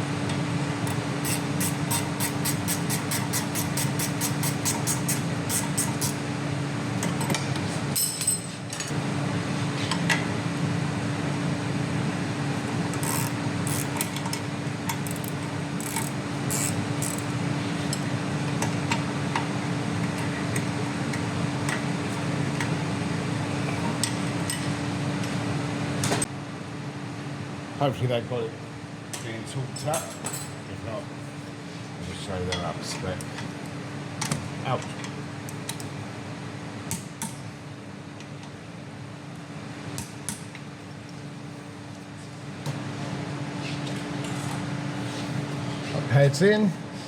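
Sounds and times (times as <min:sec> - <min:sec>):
hand tools clicking on metal: 0:00.9 - 0:06.2, 0:14.9 - 0:17.3.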